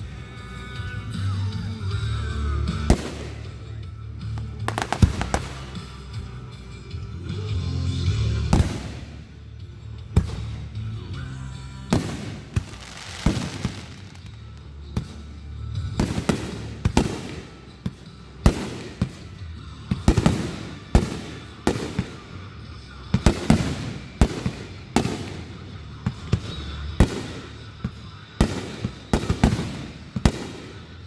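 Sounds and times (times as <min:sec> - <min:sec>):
music with low notes: 0:00.0 - 0:31.0
fireworks crackling: 0:02.3 - 0:06.5, 0:08.4 - 0:09.4, 0:10.2 - 0:31.0
fireworks bursting: 0:02.7 - 0:06.3, 0:08.4 - 0:09.4, 0:10.2 - 0:11.0, 0:11.9 - 0:31.0.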